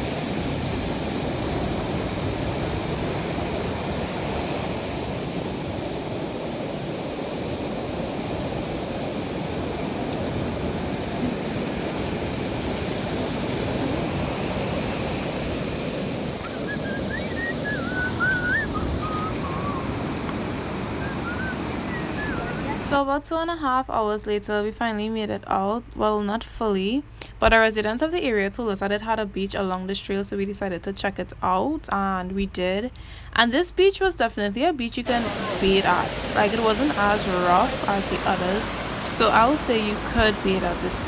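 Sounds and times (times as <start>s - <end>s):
sea waves breaking on beach: 0.0s - 23.0s, 35.0s - 41.0s.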